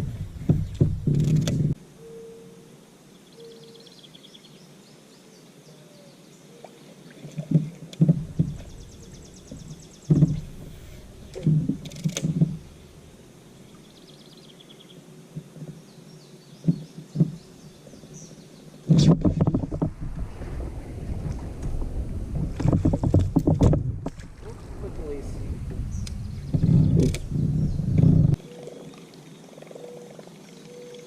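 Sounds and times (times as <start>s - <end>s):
low thumps: 0.0s - 1.8s, 8.0s - 13.8s, 18.9s - 28.4s
small birds chirping: 8.3s - 19.0s, 25.0s - 31.0s.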